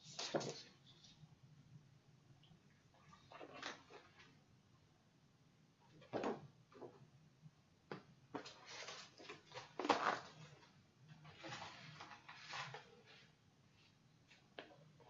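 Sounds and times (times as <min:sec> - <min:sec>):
paper and plastic packaging rustling: 0:08.4 - 0:13.3.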